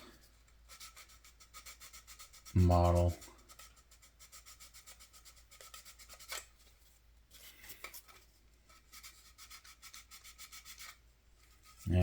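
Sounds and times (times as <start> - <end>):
sandpaper scratching: 0.7 - 6.4, 8.7 - 12.0.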